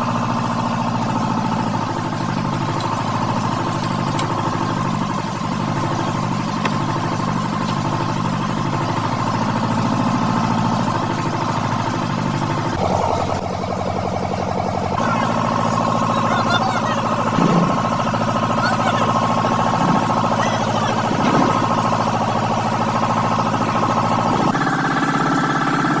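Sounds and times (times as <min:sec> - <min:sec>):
engine running steadily: 0:00.0 - 0:26.0.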